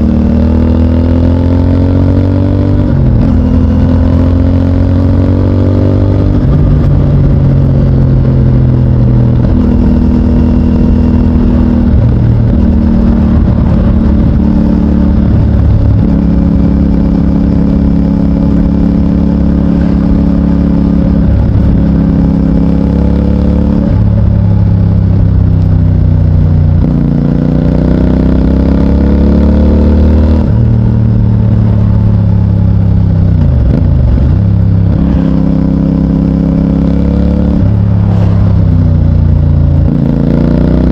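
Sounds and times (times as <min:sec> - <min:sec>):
motorcycle engine revving: 0:00.0 - 0:40.9.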